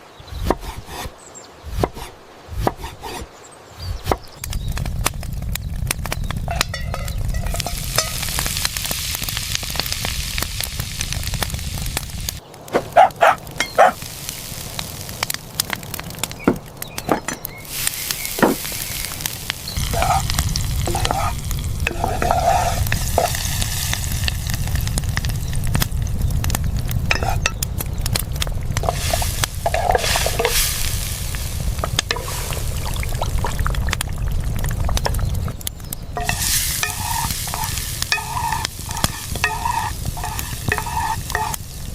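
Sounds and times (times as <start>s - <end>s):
food sizzling in a pan: 6.4s - 12.4s, 13.6s - 15.6s, 17.5s - 26.2s, 27.0s - 27.6s, 28.7s - 35.2s, 36.2s - 41.9s.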